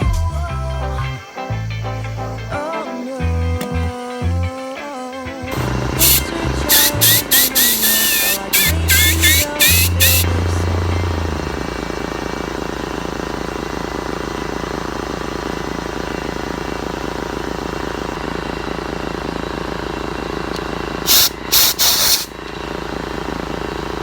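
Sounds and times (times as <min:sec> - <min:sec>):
machine pulsing: 0:05.5 - 0:24.0
air hiss bursts: 0:06.0 - 0:10.2, 0:21.1 - 0:22.3.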